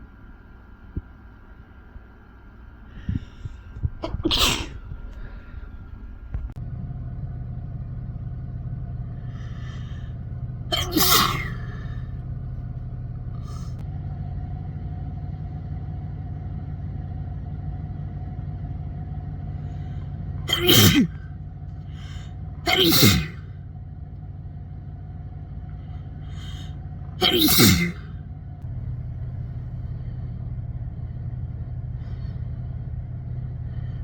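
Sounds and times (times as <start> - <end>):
steady low hum: 0.0 - 34.0
breathy intake: 2.9 - 5.9, 9.2 - 12.1, 21.9 - 23.5, 26.3 - 28.1
person sneezing: 4.0 - 4.8, 10.7 - 11.9, 20.5 - 21.2, 22.0 - 23.4, 27.2 - 28.1.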